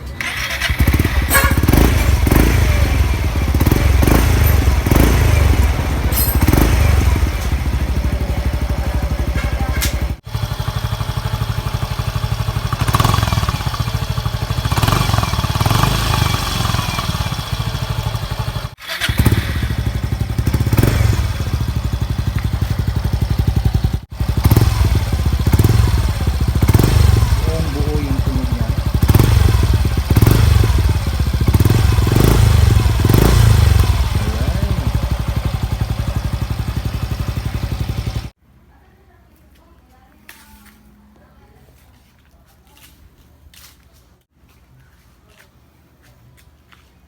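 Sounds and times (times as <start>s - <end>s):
motorcycle engine idling with throttle blips: 0.0s - 38.4s.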